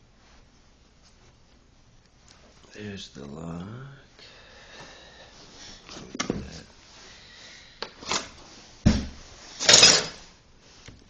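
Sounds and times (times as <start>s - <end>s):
heavy thud: 8.8s - 9.2s.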